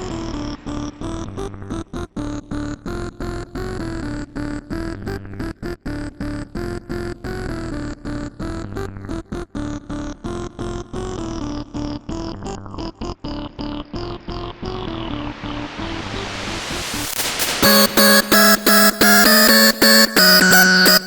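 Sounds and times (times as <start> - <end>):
steady synth bass: 13.3 - 21.0
synthesizer melody: 15.1 - 21.0.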